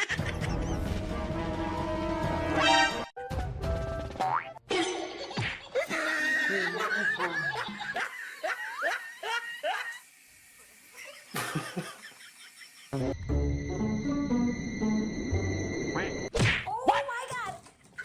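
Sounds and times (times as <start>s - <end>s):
person laughing: 0.0s - 0.9s, 4.7s - 10.1s, 11.0s - 13.0s.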